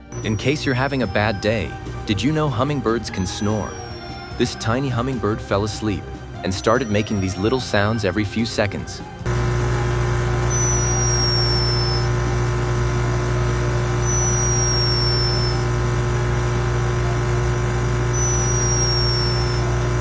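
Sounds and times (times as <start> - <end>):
hummingbird snoring whistle: 3.2 - 4.5, 10.5 - 12.2, 14.0 - 15.8, 18.1 - 19.8
steady low hum: 9.2 - 20.0.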